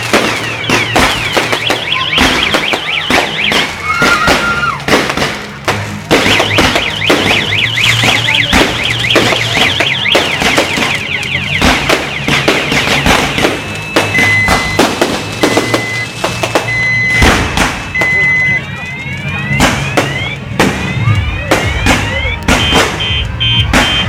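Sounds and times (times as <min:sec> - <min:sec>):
fireworks bangs and cracks: 0:00.0 - 0:24.0
short steady beeps: 0:06.3 - 0:20.4
warbling alarm tone: 0:06.3 - 0:24.0.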